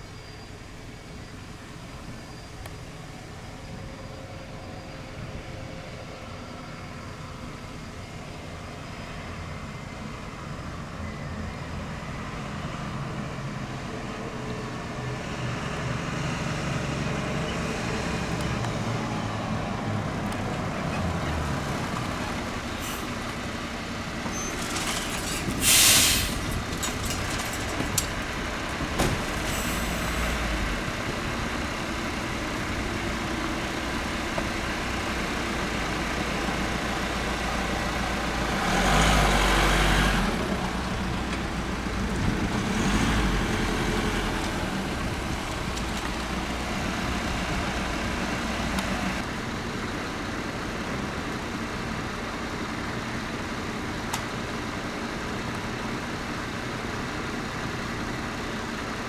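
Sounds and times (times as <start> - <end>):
diesel engine idling: 0.0 - 24.7, 25.6 - 59.0
air brakes hiss: 22.7 - 23.2, 24.3 - 26.6, 29.4 - 30.4.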